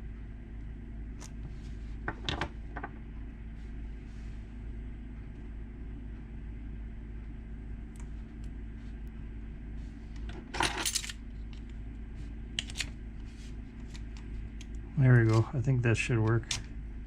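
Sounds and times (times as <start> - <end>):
steady low hum: 0.0 - 17.0
small metal parts clicking: 10.6 - 11.2.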